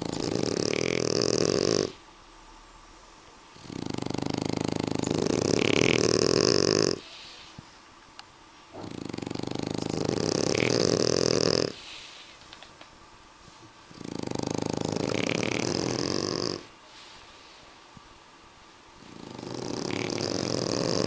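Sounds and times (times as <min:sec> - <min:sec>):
dog snoring: 0:00.0 - 0:02.0, 0:03.5 - 0:07.5, 0:08.7 - 0:12.2, 0:13.9 - 0:17.1, 0:19.0 - 0:21.0.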